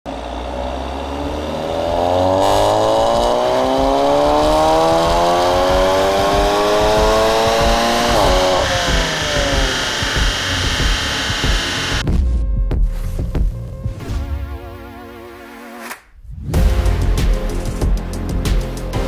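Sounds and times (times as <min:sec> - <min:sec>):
car engine accelerating hard: 0:00.1 - 0:12.0.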